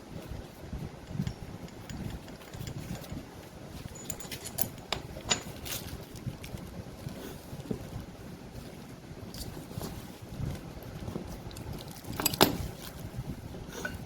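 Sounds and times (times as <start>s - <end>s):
low steady rumble: 0.0s - 14.0s
metallic clinks of tools: 3.9s - 5.8s, 12.0s - 12.7s.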